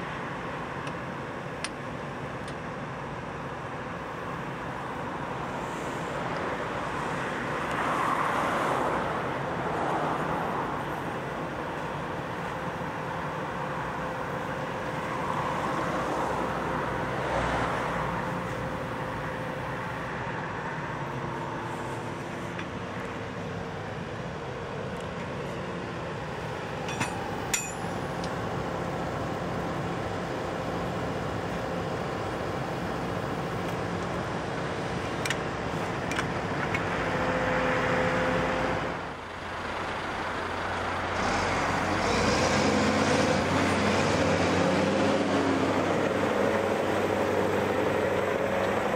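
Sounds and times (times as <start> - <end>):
steady engine hum: 0.0 - 48.9
traffic passing: 0.0 - 48.9
sharp metallic clanks: 26.8 - 28.2.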